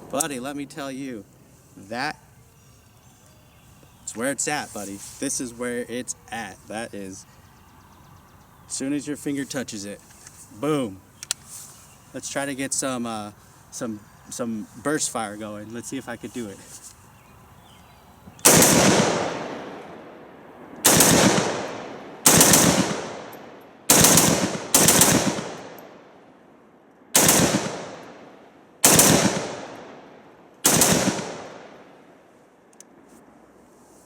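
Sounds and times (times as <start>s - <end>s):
rifle shots echoing: 18.4s - 26.2s, 27.1s - 32.2s.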